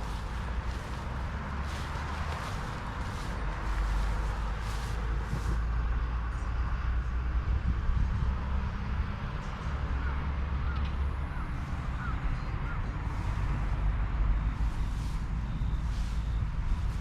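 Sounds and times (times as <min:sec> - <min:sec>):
steady low rumble: 0:00.0 - 0:17.0
bird calling: 0:10.0 - 0:12.9.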